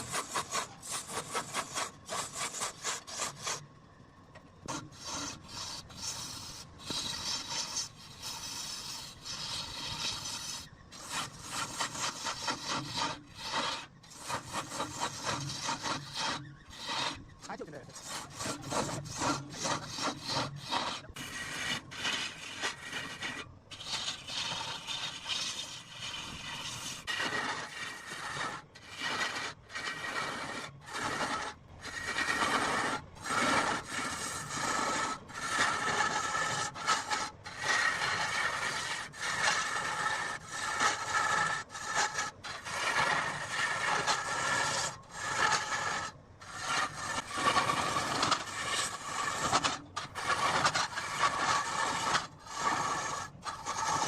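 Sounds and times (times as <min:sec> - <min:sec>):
tool scraping wood: 0:00.0 - 0:03.7, 0:04.3 - 0:54.0.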